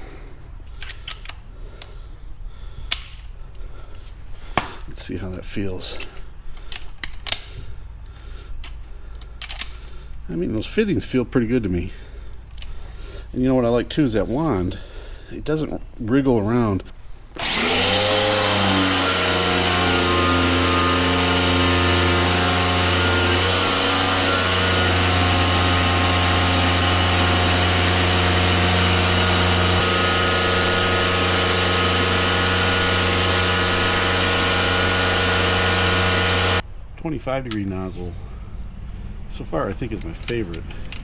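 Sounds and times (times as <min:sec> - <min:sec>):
high-pressure water jet hissing: 0:17.4 - 0:36.6
pressure washer motor humming: 0:17.4 - 0:36.6.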